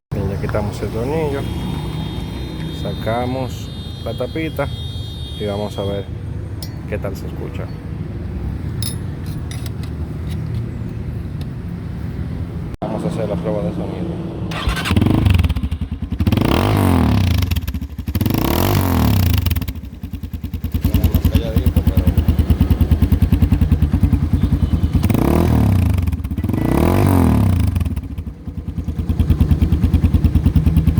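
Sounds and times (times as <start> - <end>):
motorcycle engine revving: 14.3 - 30.9.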